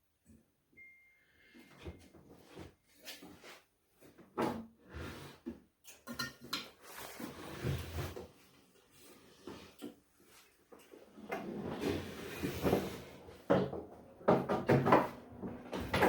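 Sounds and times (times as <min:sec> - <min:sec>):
wooden cart clunks and knocks: 0:13.5 - 0:16.0.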